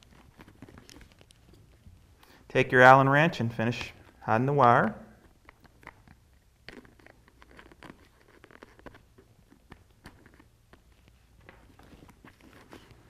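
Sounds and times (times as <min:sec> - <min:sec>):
faint scratching and light clicks: 0:00.0 - 0:02.4, 0:05.1 - 0:13.0.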